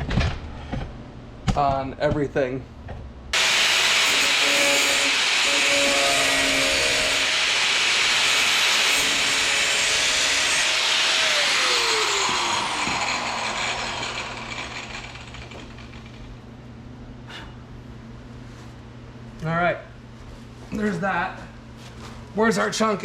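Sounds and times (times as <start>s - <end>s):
cutoff wheel cutting sheet metal: 3.4s - 16.3s.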